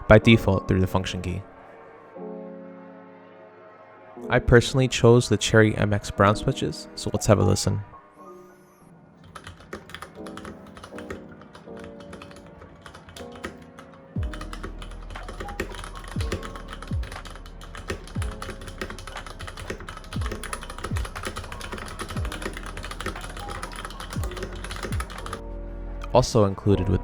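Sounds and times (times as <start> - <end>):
mechanical keyboard typing: 9.2 - 25.4.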